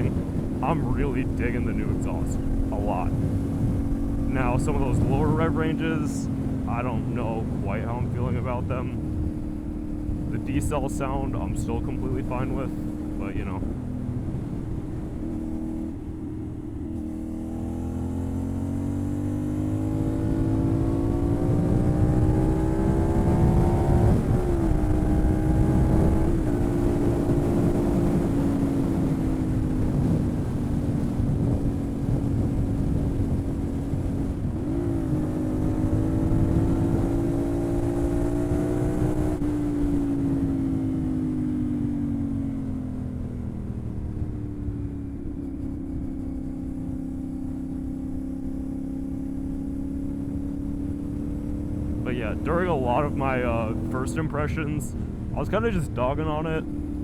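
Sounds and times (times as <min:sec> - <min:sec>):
wind noise on microphone: 0:00.0 - 0:06.6, 0:12.8 - 0:17.6, 0:19.5 - 0:41.9
motorcycle engine revving: 0:00.0 - 0:55.4.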